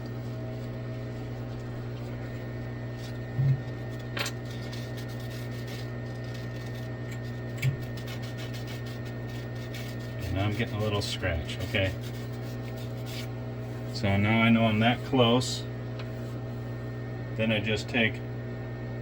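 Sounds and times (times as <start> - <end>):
low electrical hum: 0.0 - 19.0
paper scratching: 2.9 - 14.0.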